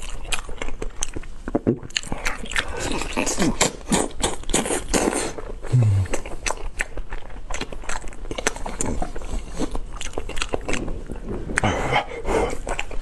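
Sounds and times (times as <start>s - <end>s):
wet chewing and crunching: 0.0s - 11.8s, 12.5s - 13.0s
short low hum: 5.7s - 6.2s.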